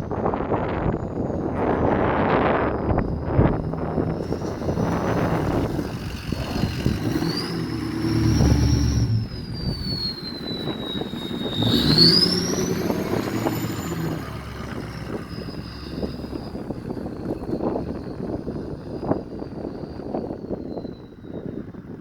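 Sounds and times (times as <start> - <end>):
diesel engine running: 0.0 - 22.0
turbocharger whistle: 0.2 - 22.0.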